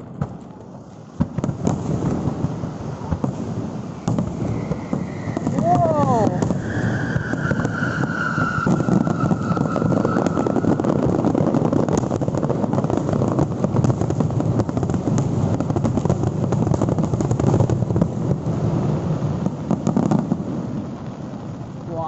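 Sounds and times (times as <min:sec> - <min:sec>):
fireworks crackling bursts: 0:00.0 - 0:22.0
falling firework whistle: 0:01.3 - 0:13.3.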